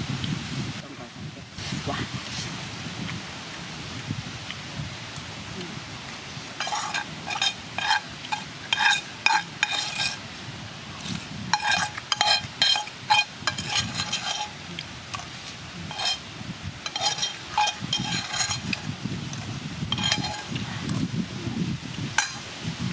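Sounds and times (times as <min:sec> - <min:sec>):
utensil clinking against a pan: 0:06.6 - 0:10.2, 0:11.5 - 0:14.6, 0:15.9 - 0:20.7, 0:22.1 - 0:22.5.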